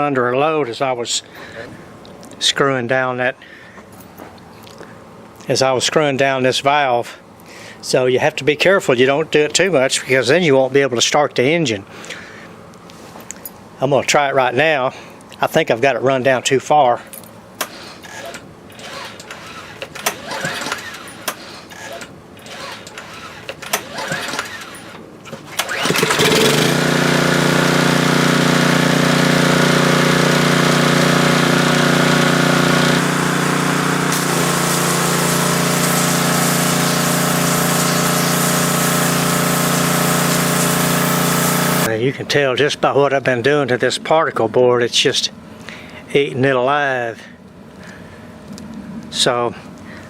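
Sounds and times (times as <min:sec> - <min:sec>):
pressure washer engine running: 0:18.8 - 0:21.6, 0:22.5 - 0:41.9
high water spray hiss: 0:26.4 - 0:41.9.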